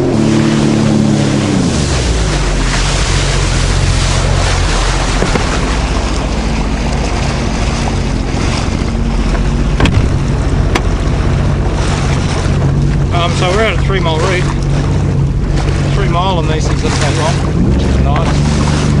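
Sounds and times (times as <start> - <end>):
jet ski engine running: 0.0 - 19.0
water rushing: 0.0 - 19.0
wind buffeting microphone: 0.0 - 19.0
sharp knock: 9.8 - 10.9.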